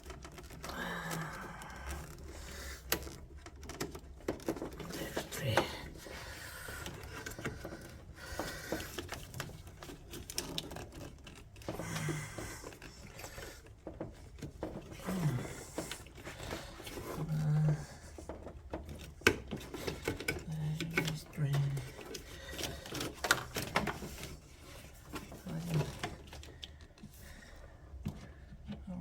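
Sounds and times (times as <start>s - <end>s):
plastic connectors clicking and rattling: 0.0s - 27.2s
person grunting: 0.7s - 1.9s, 15.0s - 15.9s.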